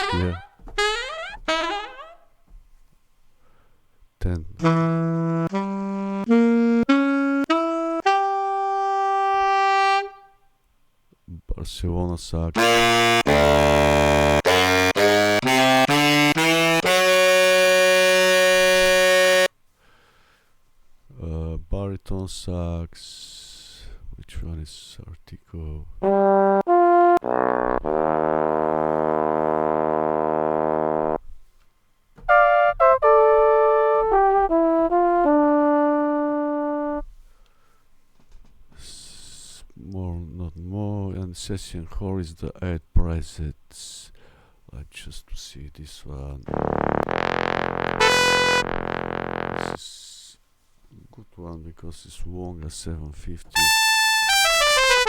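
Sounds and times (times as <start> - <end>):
sampled saxophone notes: 0.0 - 2.3, 4.5 - 10.4, 12.6 - 19.6, 26.0 - 31.2, 32.2 - 37.1, 46.4 - 49.8, 53.6 - 55.0.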